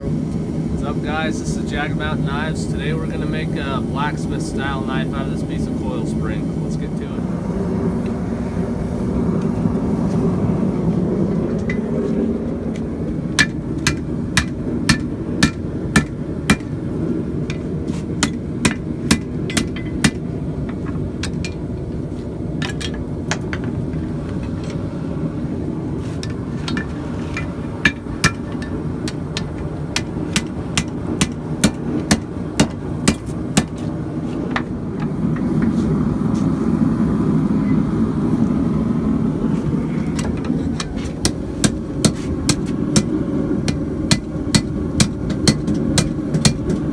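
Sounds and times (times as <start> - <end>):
steady low roar: 23.9 - 45.0.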